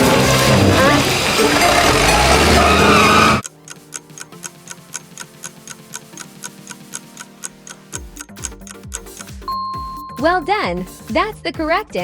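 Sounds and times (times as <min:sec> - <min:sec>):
clock ticking: 0:03.4 - 0:09.6.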